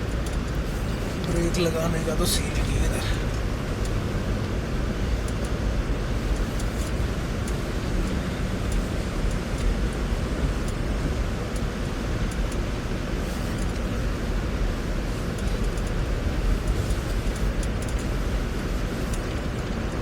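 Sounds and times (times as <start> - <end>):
vehicle engine and tyres rumbling: 0.0 - 20.0
faint ticks: 15.3 - 16.0, 16.6 - 18.2.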